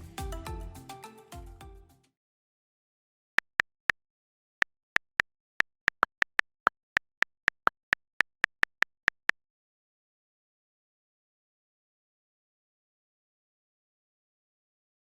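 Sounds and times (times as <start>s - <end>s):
phone keyboard clicks: 5.0s - 9.4s.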